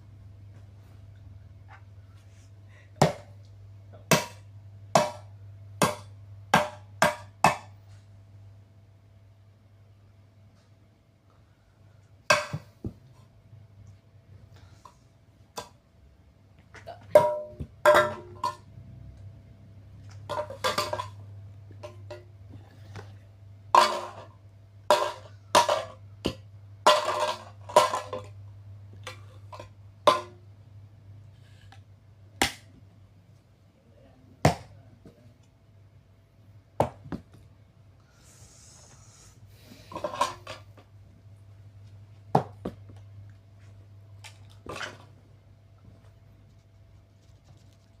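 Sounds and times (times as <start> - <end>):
low steady hum: 0.0 - 48.0
coffee maker being smashed: 26.8 - 28.3.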